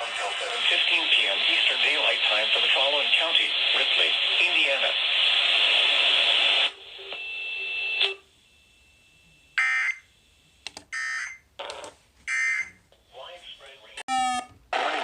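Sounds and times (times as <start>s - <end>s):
radio broadcast warning: 0.0s - 6.8s, 13.0s - 15.0s.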